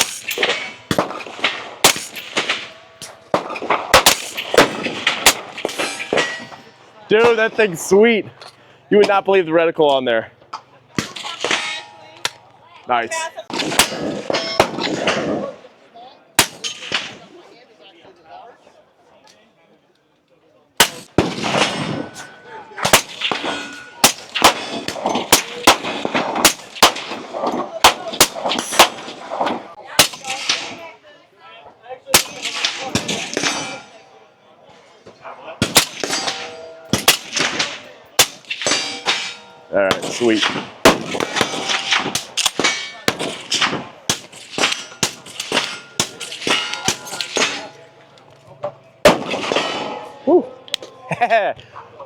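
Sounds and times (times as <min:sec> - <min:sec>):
gunshots with echo: 0:00.0 - 0:07.6, 0:13.5 - 0:15.5, 0:20.8 - 0:30.8, 0:35.6 - 0:47.9, 0:49.1 - 0:50.1
metallic ring: 0:05.6 - 0:06.8, 0:11.2 - 0:12.3, 0:35.9 - 0:37.7, 0:38.5 - 0:39.8, 0:44.3 - 0:48.1.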